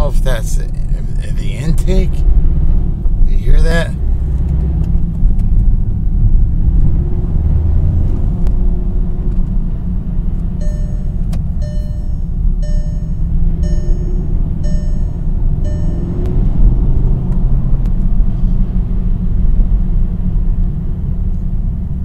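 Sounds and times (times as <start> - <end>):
car engine rumble inside cabin: 0.0 - 22.0
short beeping tone: 10.6 - 16.4.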